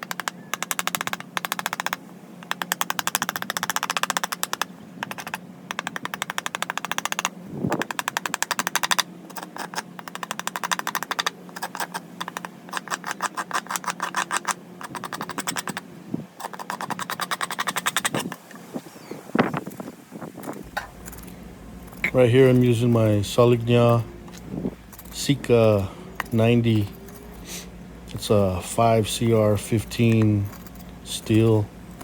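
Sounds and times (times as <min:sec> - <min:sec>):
rapid clicking: 0:00.0 - 0:15.8, 0:16.4 - 0:18.4, 0:20.4 - 0:32.0
low steady hum: 0:18.2 - 0:32.0.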